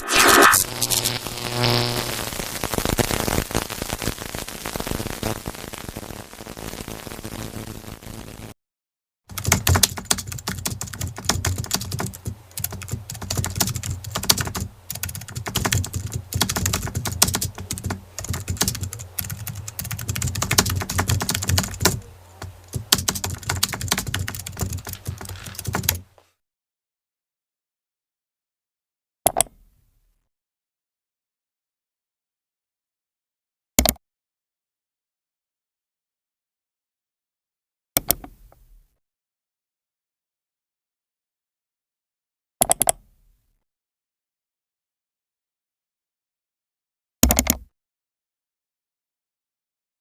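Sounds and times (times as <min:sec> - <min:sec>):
short pitched tone: 0:00.0 - 0:01.0
rapid keyboard typing: 0:09.3 - 0:26.1, 0:47.2 - 0:47.6.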